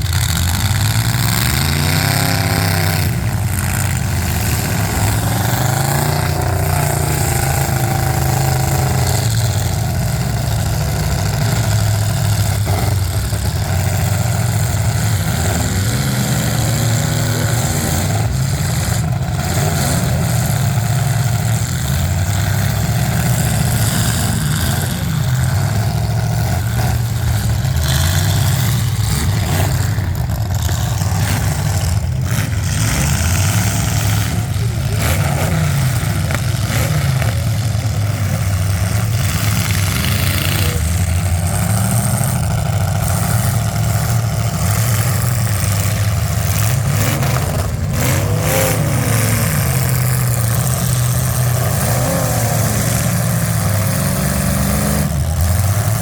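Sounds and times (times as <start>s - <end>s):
loud car engines revving: 0.0s - 56.0s.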